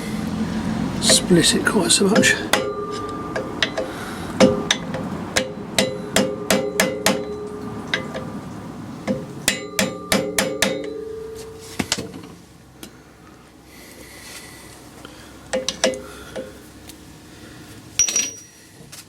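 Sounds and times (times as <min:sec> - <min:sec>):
hammer tapping on metal: 0:01.0 - 0:01.5, 0:02.1 - 0:12.4, 0:15.5 - 0:16.6.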